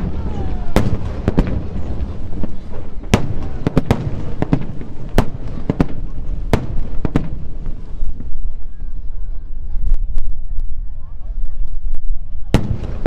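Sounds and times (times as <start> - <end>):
low rumble of echoing booms: 0.0 - 9.0
fireworks bursting with sharp bangs: 0.0 - 13.0.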